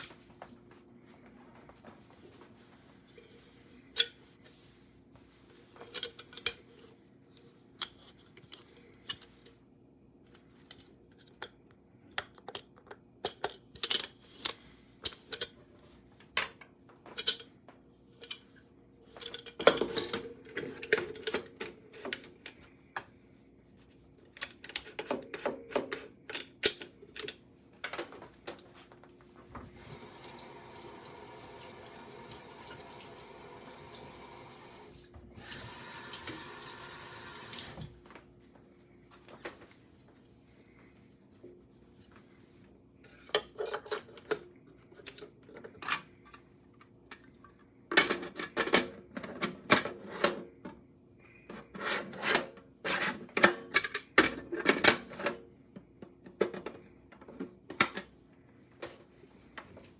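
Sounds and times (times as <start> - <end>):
tap water running: 29.7 - 38.0.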